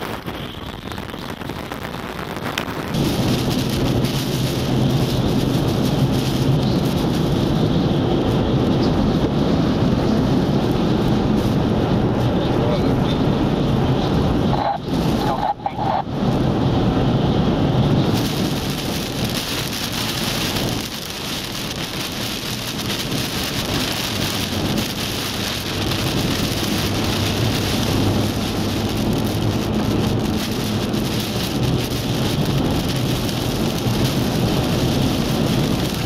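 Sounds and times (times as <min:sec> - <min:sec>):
engine and road rumble: 0:00.0 - 0:36.0
heavy rain on vehicle: 0:00.0 - 0:36.0.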